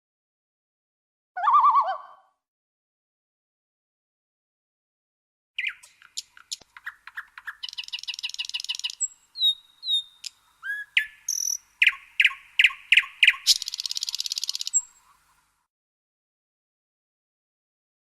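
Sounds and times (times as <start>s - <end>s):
songbird singing: 5.6s - 15.7s.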